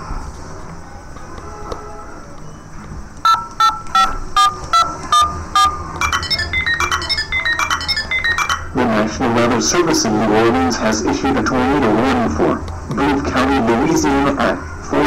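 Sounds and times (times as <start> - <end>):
two-tone electronic alert beeps: 3.2 - 8.8.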